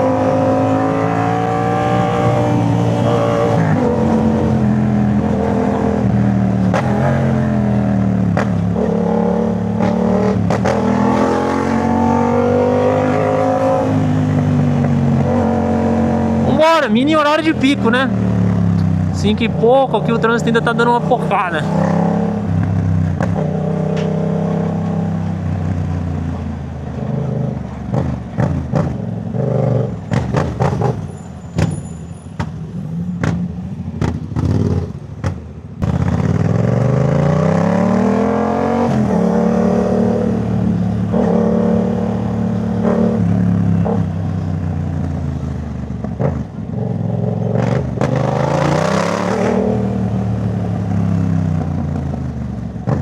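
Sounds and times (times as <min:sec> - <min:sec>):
motorcycle engine revving: 0:00.0 - 0:31.7, 0:32.4 - 0:53.0
exhaust cracks: 0:32.4 - 0:36.8.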